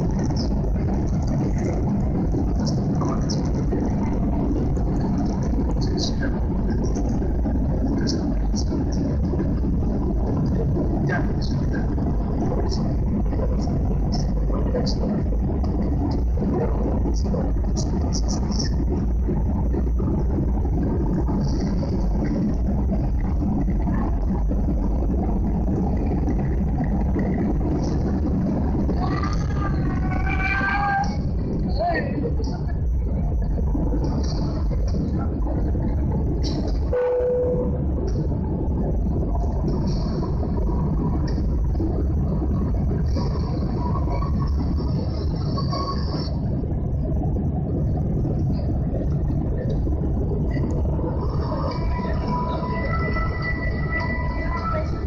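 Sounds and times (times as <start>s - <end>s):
jet engines roaring in cabin: 0.0s - 55.0s.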